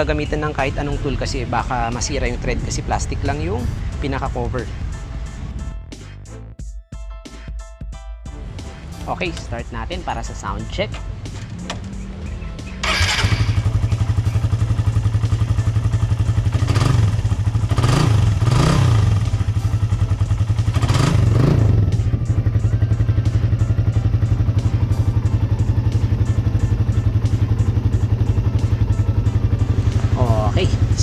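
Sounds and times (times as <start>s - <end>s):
motorcycle engine idling: 8.4s - 31.0s
engine throttle blips: 8.6s - 31.0s.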